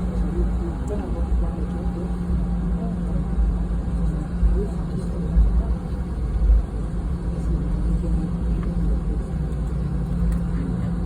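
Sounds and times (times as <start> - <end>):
airplane cabin engine drone: 0.0 - 11.0
constant low hum: 0.0 - 11.0.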